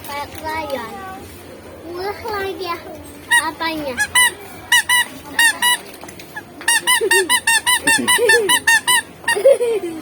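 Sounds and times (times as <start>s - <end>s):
squeeze toy honking: 4.0s - 5.8s, 6.7s - 9.1s.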